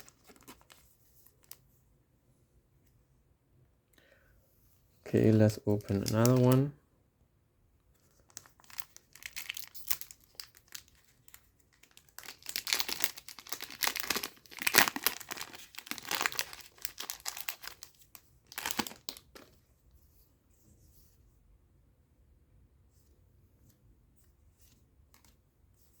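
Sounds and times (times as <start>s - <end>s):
foil wrapper crackling and tearing: 8.3s - 19.4s.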